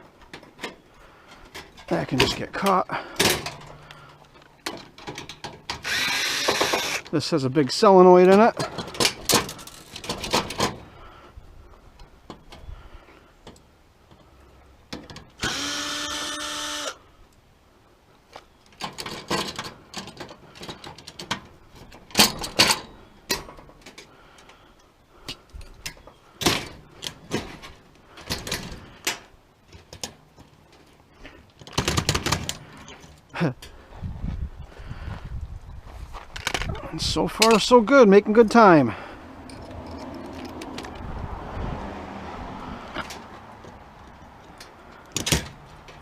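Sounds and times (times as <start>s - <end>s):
metal clanks and knocks: 1.5s - 5.8s, 8.3s - 10.9s, 18.8s - 24.1s
power drill running: 5.8s - 7.0s, 15.4s - 17.0s.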